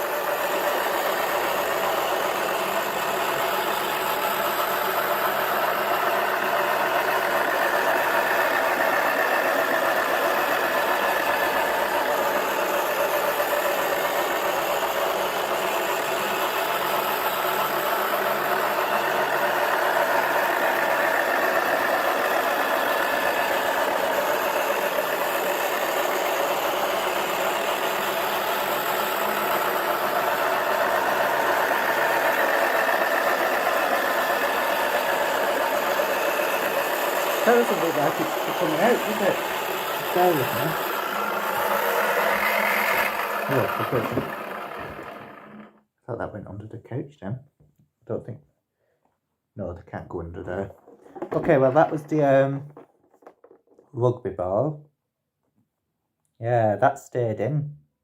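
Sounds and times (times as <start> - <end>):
small electric motor running: 0.0 - 45.8.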